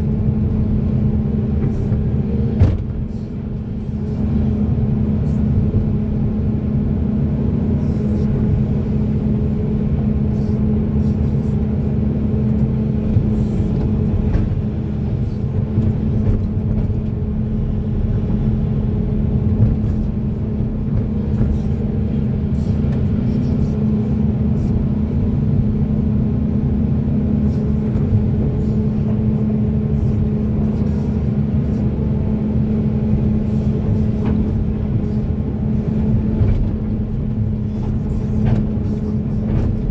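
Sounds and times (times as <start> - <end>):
excavator diesel engine droning: 0.0 - 39.9.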